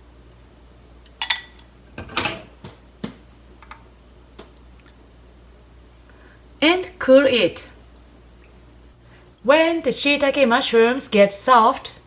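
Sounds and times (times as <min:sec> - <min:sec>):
utensils clinking against a pot: 0:01.1 - 0:02.5.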